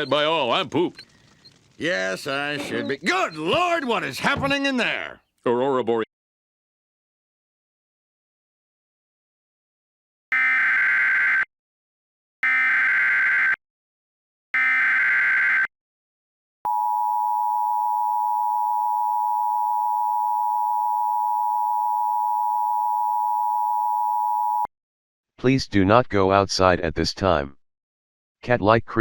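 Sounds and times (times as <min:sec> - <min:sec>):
bursts of data tones: 0:00.0 - 0:03.8.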